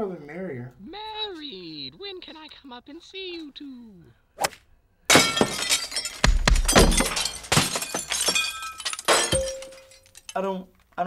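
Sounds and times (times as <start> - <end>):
glass shattering: 5.1 - 10.4
shards clattering: 5.1 - 10.4
heavy thud: 6.1 - 7.7.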